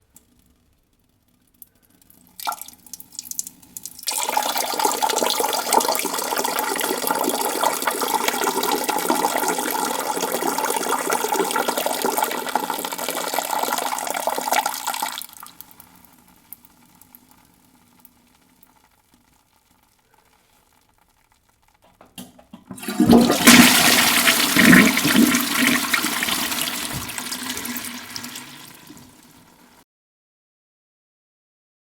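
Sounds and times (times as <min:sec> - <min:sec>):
urine stream into toilet bowl: 0:01.4 - 0:29.8
toilet flushing: 0:04.0 - 0:15.6, 0:22.5 - 0:29.8.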